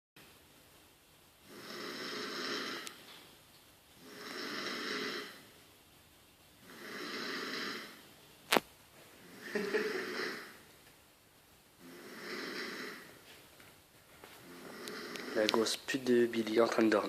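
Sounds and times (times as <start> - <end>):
person snoring: 1.4 - 3.0, 4.0 - 5.5, 6.6 - 8.0, 9.2 - 10.6, 11.8 - 13.2, 14.4 - 15.7.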